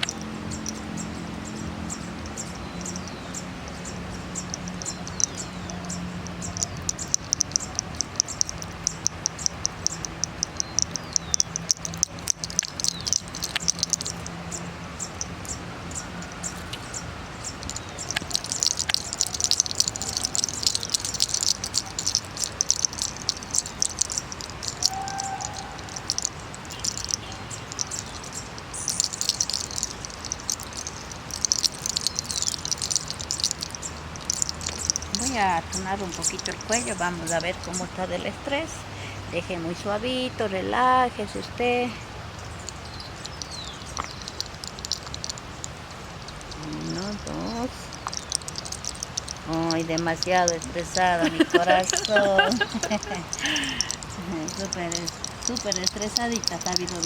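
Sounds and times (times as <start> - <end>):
insects chirping: 0.0 - 57.0.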